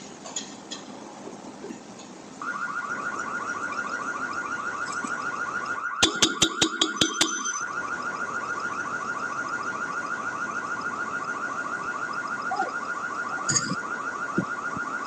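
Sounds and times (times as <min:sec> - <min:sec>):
car alarm sharp beeps: 0:02.4 - 0:15.0
car alarm sweeping chirp: 0:02.4 - 0:15.0.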